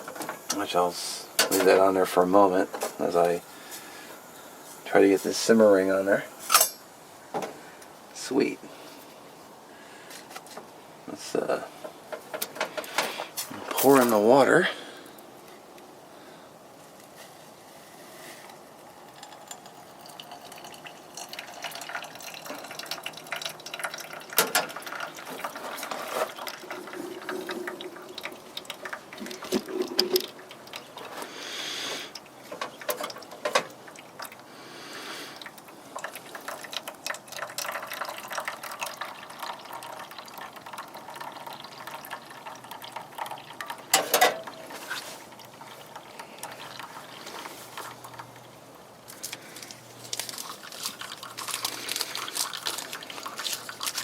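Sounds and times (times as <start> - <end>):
hot water pouring into mug: 18.5 - 48.6, 49.7 - 54.0
cookware clinking and knocking: 43.9 - 44.6.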